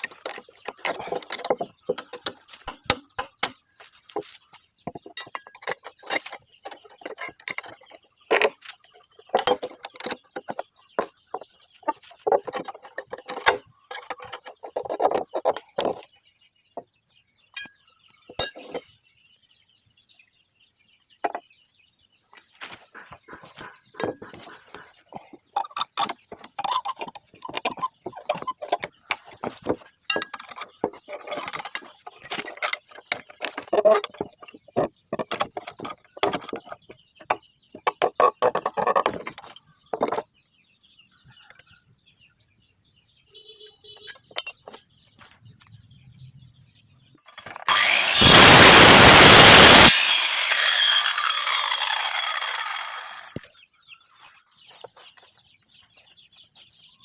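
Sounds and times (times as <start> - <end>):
power tool whining: 47.5 - 53.4.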